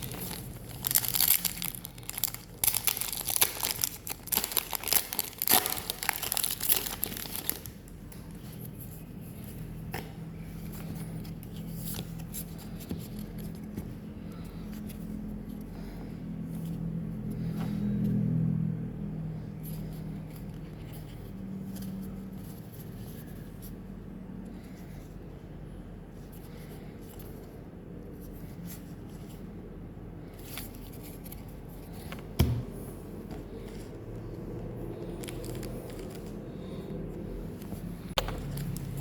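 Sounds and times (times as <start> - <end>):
cards and packaging handled: 0.0 - 16.0, 30.2 - 32.4, 33.1 - 39.0.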